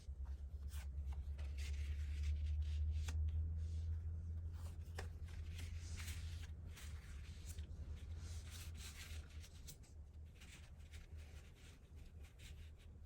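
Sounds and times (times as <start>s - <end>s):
low steady hum: 0.0s - 13.0s
paper rustling on a work surface: 4.5s - 12.8s.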